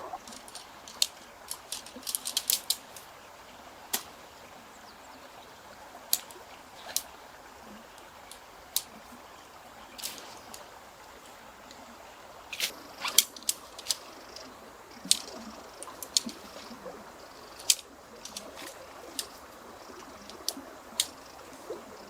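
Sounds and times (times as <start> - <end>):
sharp clicks and light taps: 17.5 - 19.4.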